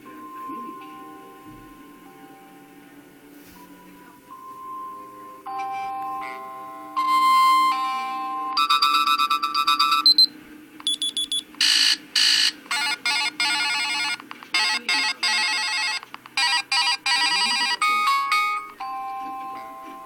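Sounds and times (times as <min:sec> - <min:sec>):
electronic ringtone melodies: 0:00.0 - 0:20.0.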